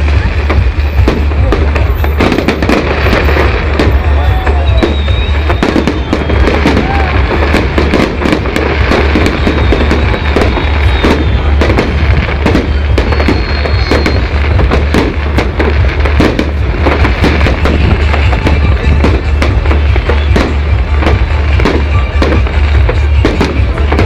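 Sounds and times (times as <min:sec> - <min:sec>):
fireworks crackling and banging: 0:00.0 - 0:24.0
thin high whistle: 0:04.0 - 0:07.1, 0:12.5 - 0:14.4.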